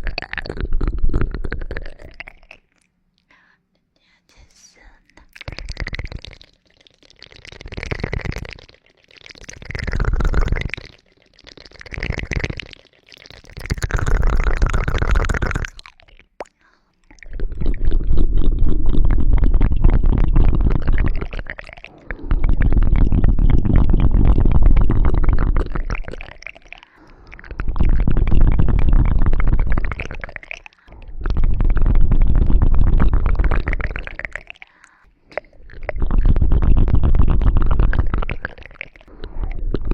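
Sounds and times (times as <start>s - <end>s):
scratching and rubbing on microphone: 17.4s - 26.2s, 27.6s - 30.4s, 31.2s - 34.4s, 35.6s - 39.0s.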